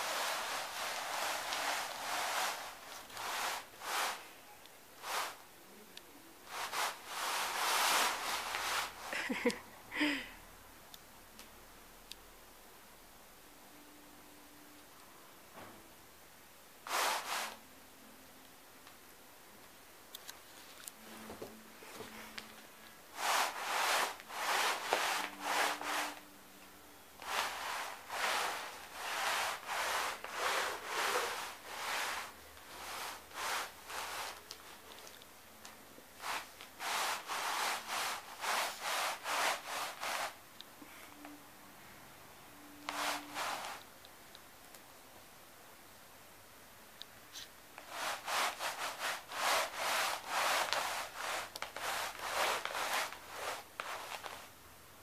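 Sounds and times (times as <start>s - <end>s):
cat scratching carpet: 0.0s - 4.3s, 6.5s - 9.1s, 16.8s - 17.6s, 23.1s - 26.3s, 27.2s - 35.2s, 36.2s - 40.4s, 42.8s - 43.9s, 47.8s - 54.5s
rasping rub strokes: 0.0s - 4.3s, 5.0s - 5.4s, 6.5s - 9.1s, 23.1s - 26.3s, 27.2s - 34.5s, 36.2s - 40.4s, 42.8s - 43.9s, 47.8s - 54.5s.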